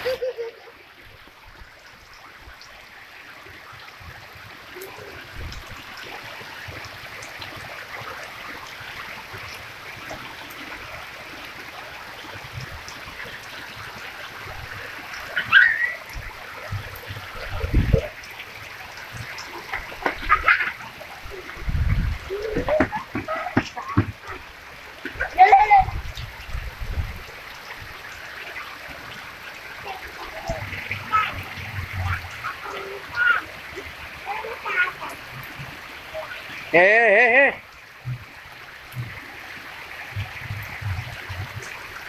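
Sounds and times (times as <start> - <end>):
steady rain: 0.0 - 42.0
water trickling: 0.0 - 42.0.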